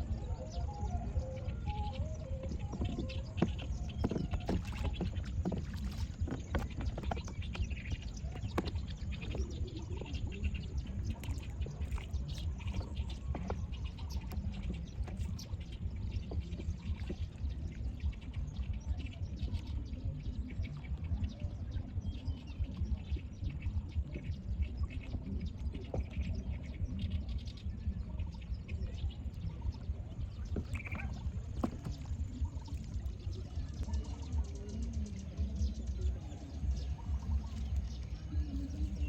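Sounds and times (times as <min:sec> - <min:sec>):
low rumble: 0:00.0 - 0:39.0
water splashing and trickling: 0:00.0 - 0:39.0.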